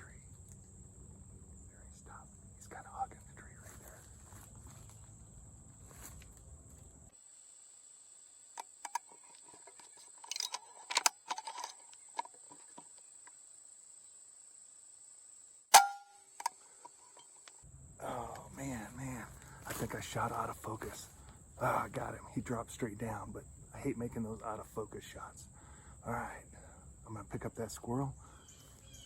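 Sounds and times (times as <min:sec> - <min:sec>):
faint clicks and rustles: 0:08.6 - 0:13.4
air rifle shot: 0:15.7 - 0:16.2.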